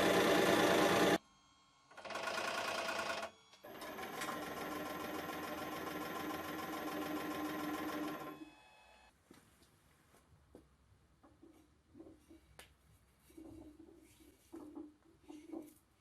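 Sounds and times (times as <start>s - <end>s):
hydraulic press motor hum: 0.0s - 1.2s.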